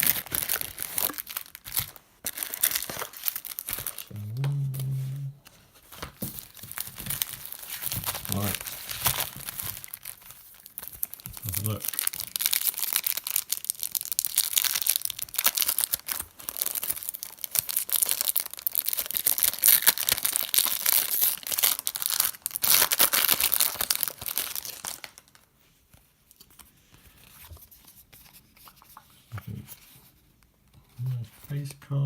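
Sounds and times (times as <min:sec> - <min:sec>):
wrappers tearing and crinkling: 0:00.0 - 0:04.2, 0:05.9 - 0:25.4
faint handling of cards: 0:00.2 - 0:12.0, 0:24.6 - 0:31.9.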